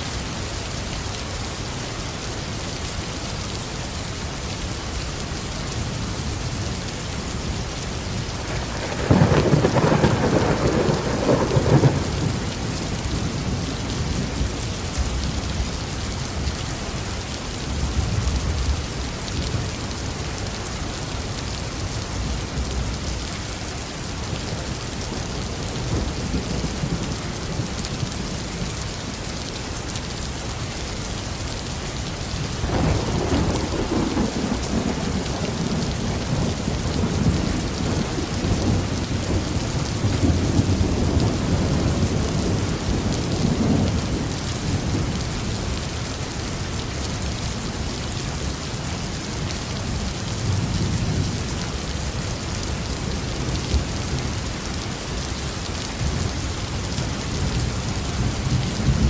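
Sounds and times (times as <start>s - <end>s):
heavy rain falling: 0.0s - 59.0s
thunder rumbling: 8.4s - 15.7s, 32.4s - 45.3s.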